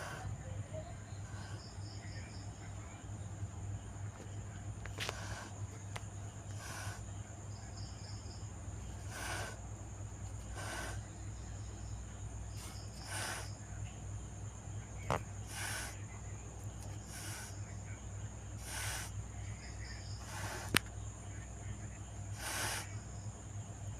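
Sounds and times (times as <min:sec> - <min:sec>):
cat hissing: 0:00.0 - 0:00.4, 0:01.2 - 0:02.1, 0:04.9 - 0:07.2, 0:08.8 - 0:09.7, 0:10.3 - 0:11.3, 0:12.5 - 0:13.6, 0:15.1 - 0:16.0, 0:16.9 - 0:17.6, 0:18.6 - 0:19.2, 0:20.2 - 0:20.9, 0:22.3 - 0:23.0.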